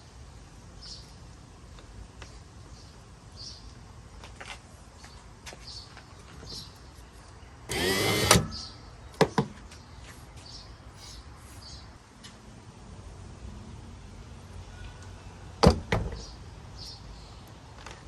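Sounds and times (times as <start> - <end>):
headlight motor whirring: 7.7 - 8.6
sharp clicks: 7.7 - 8.6.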